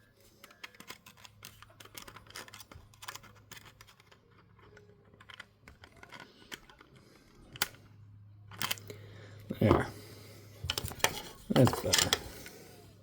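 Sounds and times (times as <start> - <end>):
pliers clicking and scraping: 10.6 - 12.6.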